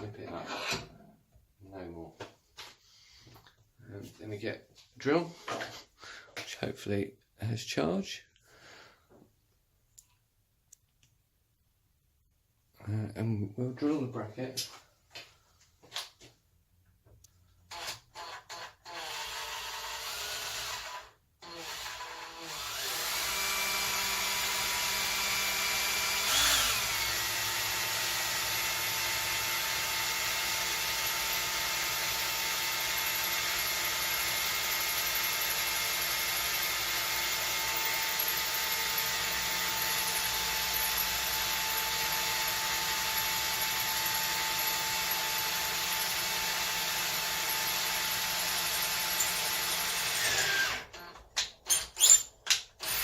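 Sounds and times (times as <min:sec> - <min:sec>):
cordless drill whining: 0:17.7 - 0:53.0.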